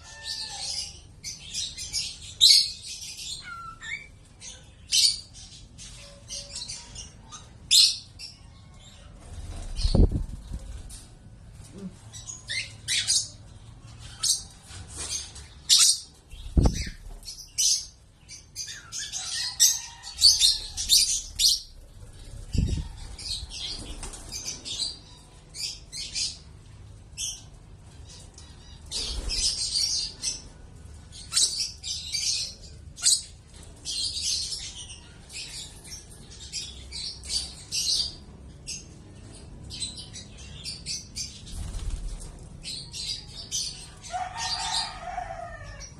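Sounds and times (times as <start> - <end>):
wings fluttering: 9.2 - 11.1, 20.6 - 24.8, 29.0 - 29.9, 41.4 - 42.6
lovebirds chirping: 14.0 - 26.4.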